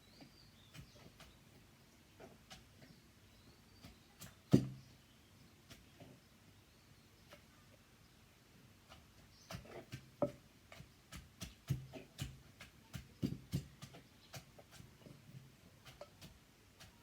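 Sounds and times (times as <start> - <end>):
pestle knocking in a mortar: 3.8 - 4.9, 9.4 - 15.0.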